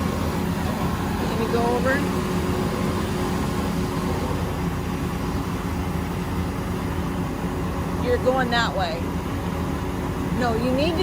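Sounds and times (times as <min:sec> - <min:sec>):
large engine running: 0:00.0 - 0:11.0.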